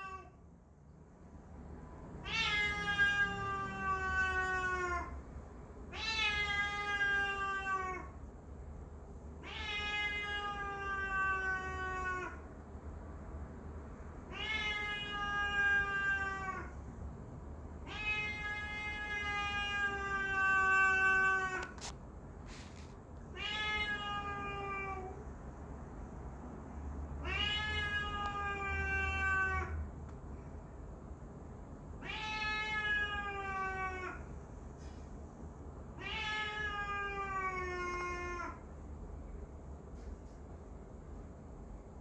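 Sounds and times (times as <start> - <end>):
cat yowling: 0.0 - 0.4, 2.2 - 5.2, 5.9 - 8.1, 9.4 - 12.4, 14.3 - 16.8, 17.8 - 21.8, 23.4 - 25.2, 27.2 - 29.8, 32.0 - 34.3, 36.0 - 38.6.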